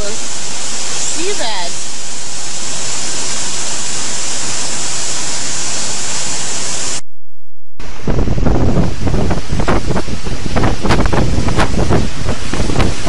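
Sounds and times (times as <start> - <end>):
wind buffeting microphone: 7.8 - 13.0
hiss of wind and rain: 8.0 - 13.0.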